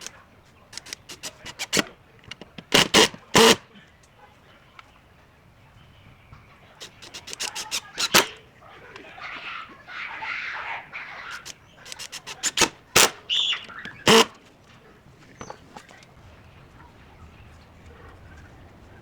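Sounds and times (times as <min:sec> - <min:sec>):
metal hardware clicking and knocking: 0:00.8 - 0:03.6, 0:06.8 - 0:08.4, 0:11.3 - 0:14.4.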